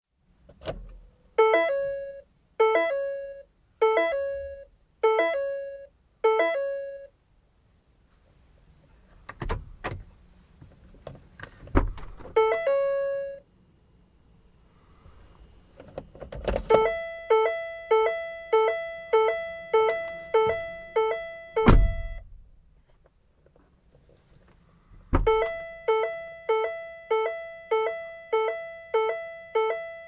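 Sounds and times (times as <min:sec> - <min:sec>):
car warning chime: 0:01.4 - 0:07.2, 0:12.4 - 0:13.5, 0:16.7 - 0:22.3, 0:25.2 - 0:30.0.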